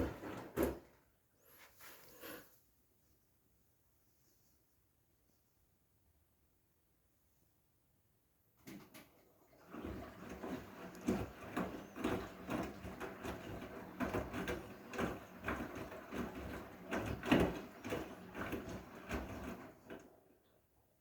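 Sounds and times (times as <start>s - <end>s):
washing machine motor hum: 0.0s - 1.6s, 8.6s - 21.0s
washing machine sloshing: 0.0s - 1.6s, 8.6s - 21.0s.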